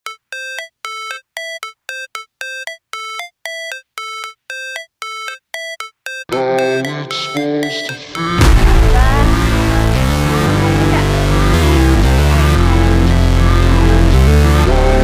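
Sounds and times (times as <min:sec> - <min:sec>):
short synth beeps: 0:00.1 - 0:09.6
electronic music with bass: 0:00.1 - 0:15.0.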